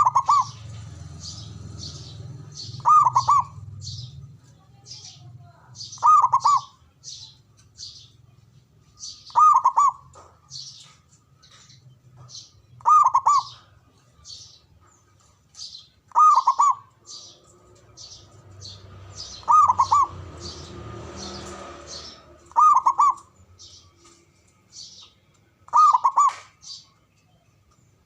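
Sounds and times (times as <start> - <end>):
dove cooing: 0.0 - 4.3, 5.9 - 6.8, 9.3 - 10.2, 12.8 - 13.8, 16.1 - 23.4, 25.7 - 26.5
small bird chirping: 0.0 - 28.0.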